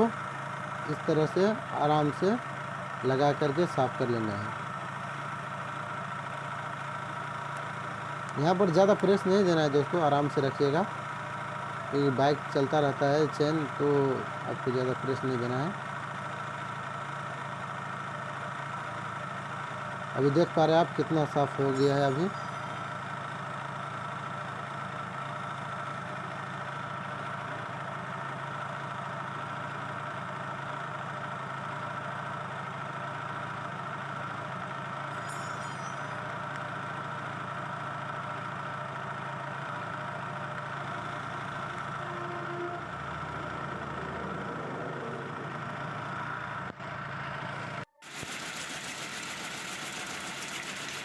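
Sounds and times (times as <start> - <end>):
motorcycle engine running: 0.0 - 51.0.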